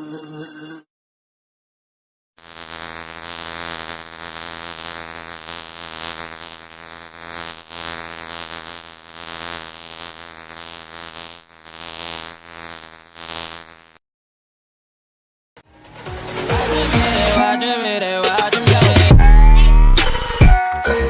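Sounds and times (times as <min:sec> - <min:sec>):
honeybees buzzing: 0:00.0 - 0:00.8, 0:02.4 - 0:14.0.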